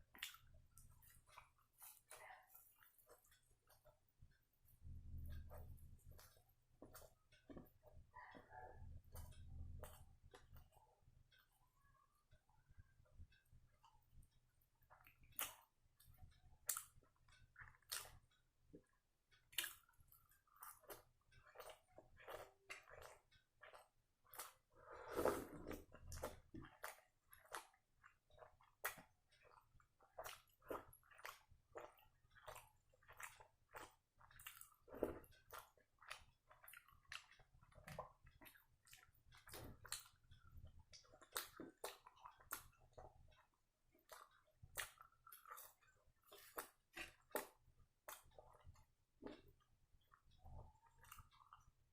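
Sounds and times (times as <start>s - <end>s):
person chewing with mouth smacks: 0.0s - 4.1s, 4.8s - 11.6s, 14.8s - 51.9s.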